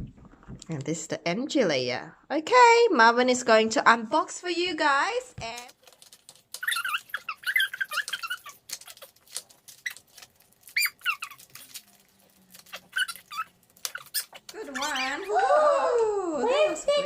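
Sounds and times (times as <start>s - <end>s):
plastic packaging crinkling: 5.4s - 15.4s
short high squeaks: 6.6s - 9.2s, 10.7s - 11.9s, 12.6s - 15.3s.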